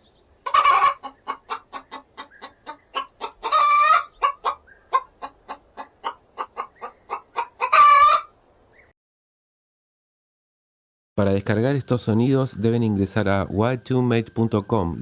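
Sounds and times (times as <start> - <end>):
hen clucking and squawking: 0.4 - 8.4.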